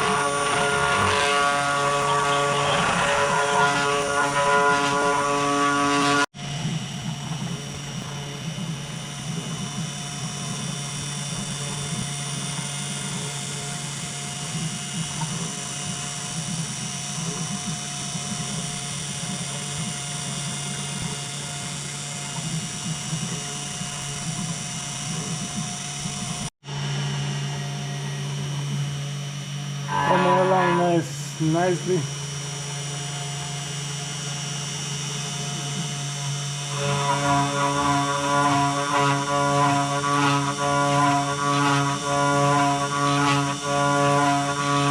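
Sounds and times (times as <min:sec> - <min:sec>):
router spindle carving wood: 0:00.0 - 0:06.3, 0:29.7 - 0:32.1, 0:35.6 - 0:44.9.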